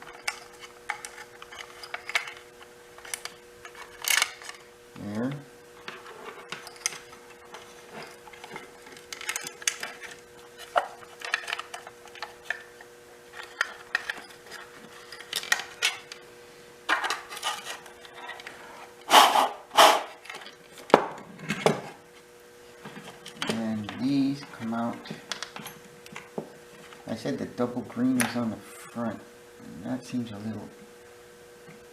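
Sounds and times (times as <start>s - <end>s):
wires and metal parts clattering: 0.0s - 4.7s, 5.8s - 16.2s, 16.9s - 18.8s, 20.1s - 22.0s, 22.8s - 27.1s
faint steady hum: 0.0s - 31.9s.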